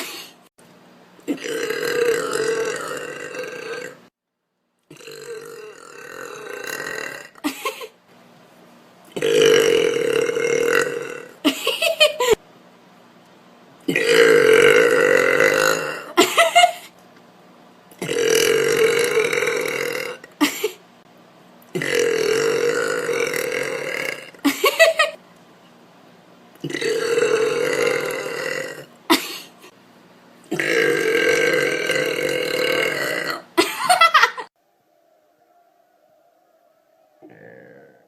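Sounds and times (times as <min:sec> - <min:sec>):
woman burping loudly: 0:01.3 - 0:04.1, 0:04.9 - 0:07.9, 0:09.2 - 0:12.4, 0:13.9 - 0:16.8, 0:18.0 - 0:20.8, 0:21.7 - 0:25.1, 0:26.6 - 0:29.5, 0:30.5 - 0:34.5.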